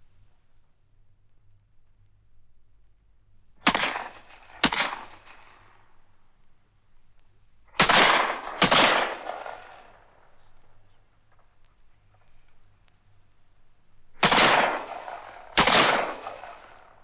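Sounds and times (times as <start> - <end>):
gunshots with long echo: 3.6 - 6.0, 7.8 - 10.8, 14.2 - 17.0.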